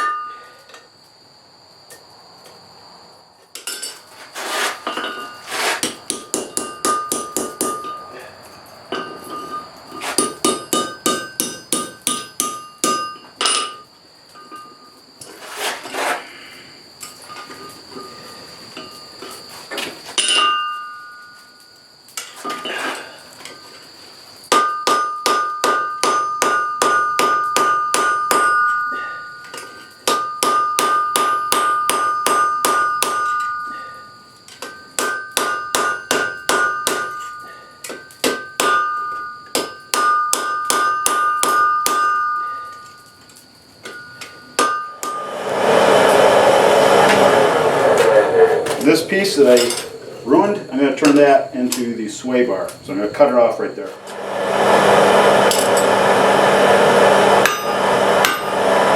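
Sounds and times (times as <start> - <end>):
hammer striking iron on anvil: 5.8 - 8.0, 10.2 - 13.8, 24.5 - 29.0, 29.6 - 33.5, 34.6 - 42.4, 44.6 - 45.4, 57.4 - 58.5
loud rushing noise: 45.0 - 50.4, 53.9 - 58.9.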